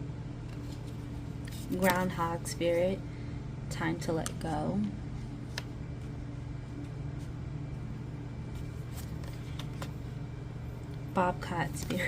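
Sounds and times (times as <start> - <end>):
low room hum: 0.0 - 12.0
cards being handled: 0.4 - 2.3, 5.4 - 6.1, 8.4 - 10.2, 10.8 - 12.0.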